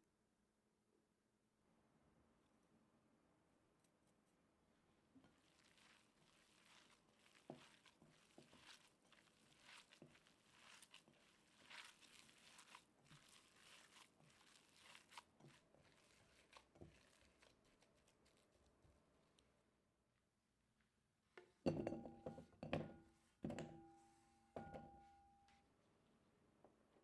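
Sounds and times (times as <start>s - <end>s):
faint rustling and crackling: 5.2s - 19.5s.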